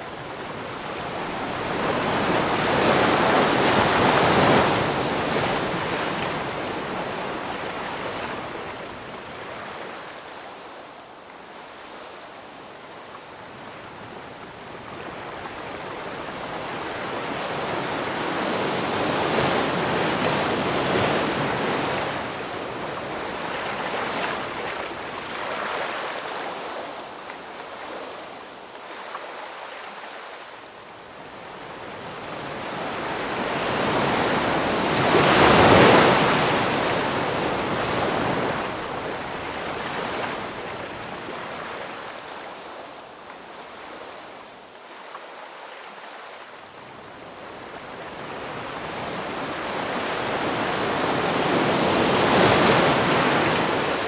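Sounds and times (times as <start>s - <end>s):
ocean waves crashing: 31.8s - 42.4s, 47.8s - 54.0s.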